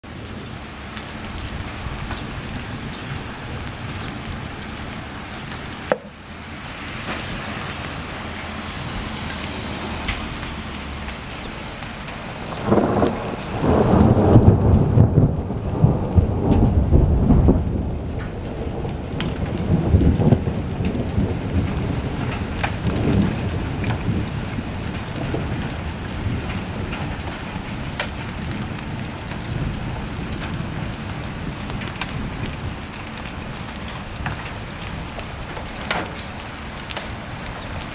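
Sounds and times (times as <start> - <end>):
steady rain: 0.0 - 37.9
thunder rumbling: 0.1 - 37.9
sharp knock: 5.9 - 6.2.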